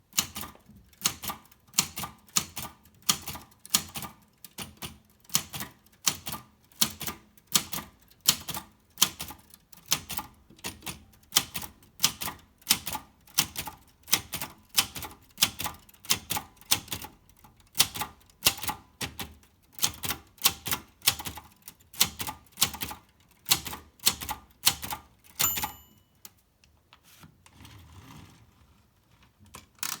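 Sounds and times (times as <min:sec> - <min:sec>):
typewriter keys striking: 0:00.2 - 0:26.0
typewriter bell ring: 0:25.4 - 0:26.3.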